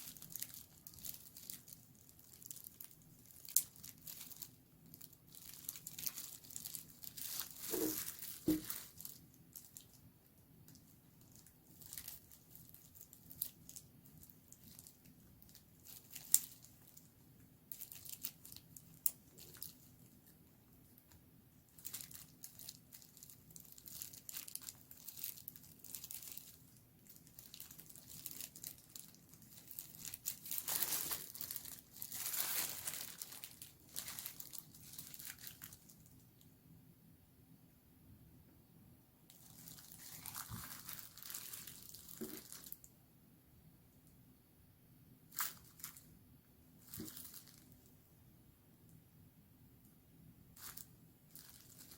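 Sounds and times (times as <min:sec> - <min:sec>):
packaging crinkling and rustling: 0:00.0 - 0:10.0, 0:10.7 - 0:17.1, 0:17.7 - 0:20.2, 0:21.0 - 0:36.2, 0:39.3 - 0:42.9, 0:45.3 - 0:46.1, 0:46.8 - 0:47.9, 0:50.6 - 0:51.9.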